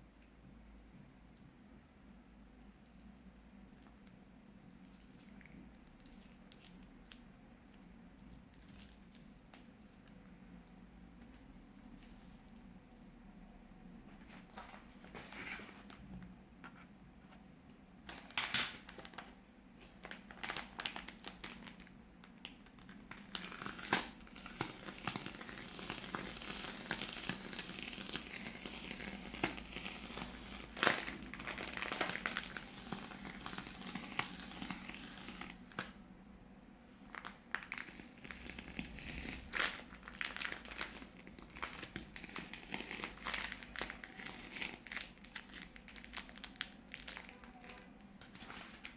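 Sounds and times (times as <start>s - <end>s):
plastic bags crinkling: 18.1s - 35.9s, 37.0s - 48.9s.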